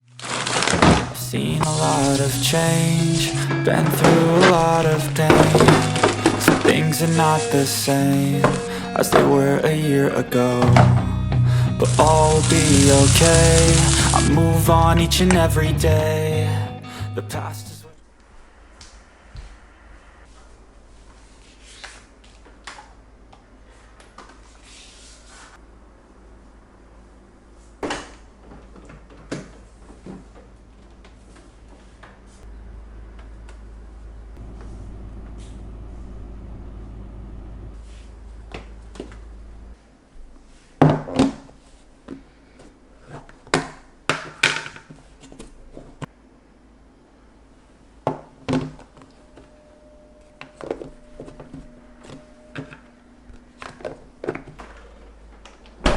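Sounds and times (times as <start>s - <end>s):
packaging rustling: 0.0s - 2.4s, 3.0s - 8.7s.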